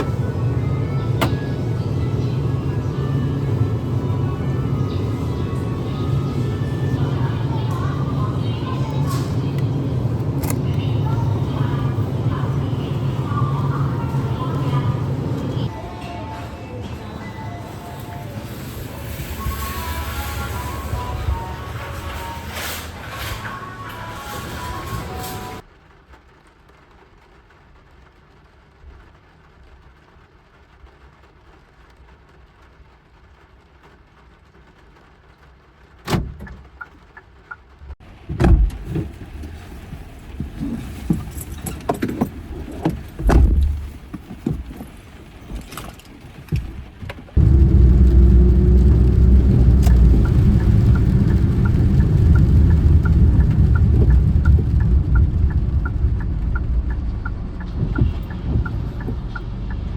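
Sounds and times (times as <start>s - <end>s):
car engine starting and running: 0.0s - 59.9s
faint regular ticking: 47.5s - 59.9s
knocks and clatter: 52.7s - 59.4s.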